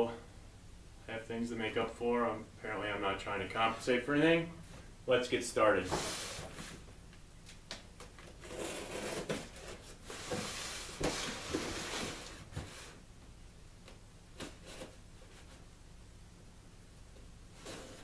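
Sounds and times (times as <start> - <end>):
tape and cardboard tearing: 8.2 - 12.4
knife cutting cardboard box: 8.4 - 12.4.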